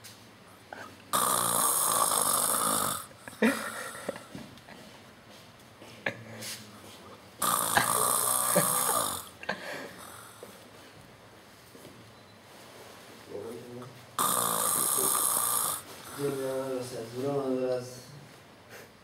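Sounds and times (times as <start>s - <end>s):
boy snoring loudly: 1.1s - 3.1s, 7.4s - 10.4s, 14.2s - 16.6s
quiet breathing: 14.9s - 16.6s.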